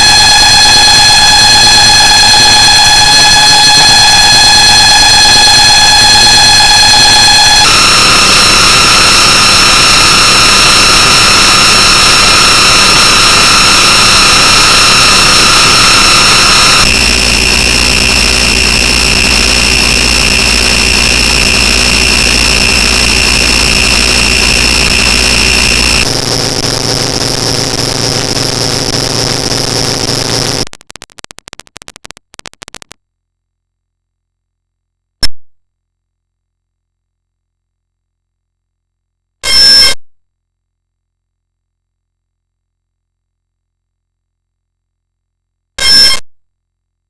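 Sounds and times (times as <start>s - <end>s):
distorted emergency alarm tones: 0.0s - 30.7s, 45.8s - 46.2s.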